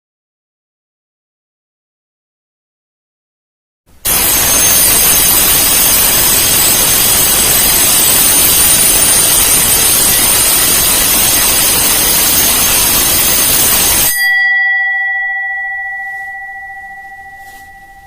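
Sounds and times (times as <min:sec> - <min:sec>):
electric bell ringing loudly: 0:04.1 - 0:18.0.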